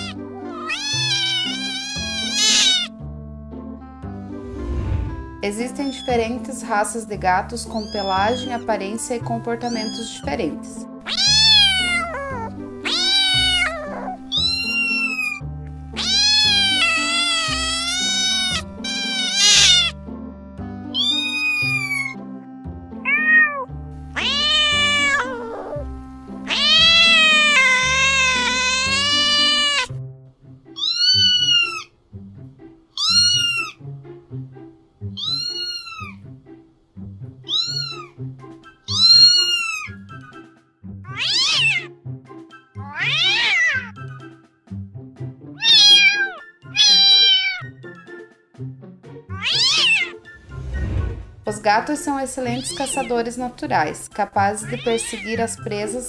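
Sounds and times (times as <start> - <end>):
cat meowing: 0.0 - 2.9, 7.8 - 8.7, 9.7 - 10.2, 11.0 - 15.4, 16.0 - 20.0, 20.9 - 22.2, 23.0 - 29.9, 30.7 - 31.9, 33.0 - 33.8, 35.1 - 36.2, 37.4 - 38.2, 38.8 - 40.1, 41.1 - 42.0, 42.8 - 44.0, 45.6 - 47.8, 49.3 - 50.2, 52.4 - 53.2, 54.6 - 55.5
background music: 0.0 - 56.0.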